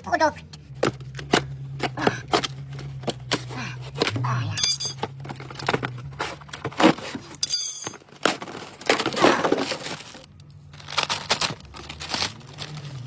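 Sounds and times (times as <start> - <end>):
scraping and rustling: 2.5 - 13.0
tools and parts clinking: 4.4 - 10.5.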